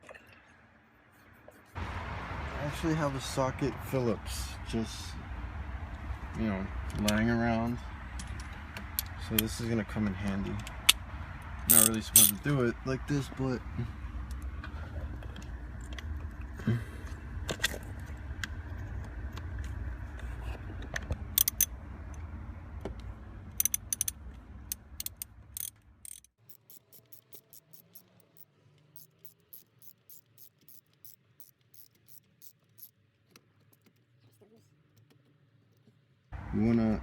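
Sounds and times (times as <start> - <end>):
hand ratchet clicking: 11.7 - 12.4, 21.4 - 21.7, 23.6 - 32.9
metal tool clinks: 11.7 - 12.4.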